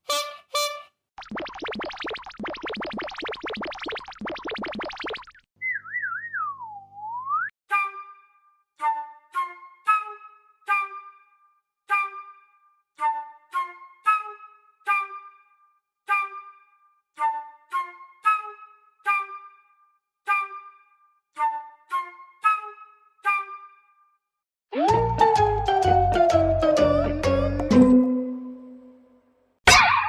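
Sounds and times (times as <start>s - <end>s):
comedy staccato music: 24.8s - 28.2s.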